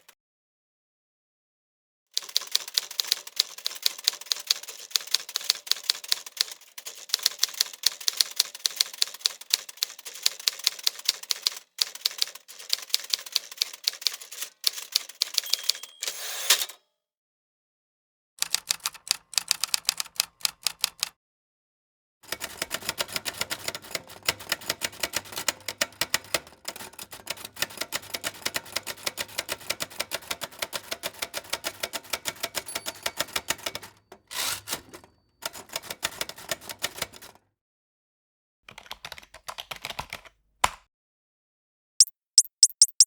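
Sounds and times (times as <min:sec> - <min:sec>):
rapid typing on keys: 0:02.2 - 0:15.8, 0:18.4 - 0:21.1, 0:22.3 - 0:34.0, 0:38.7 - 0:40.3, 0:42.4 - 0:43.0.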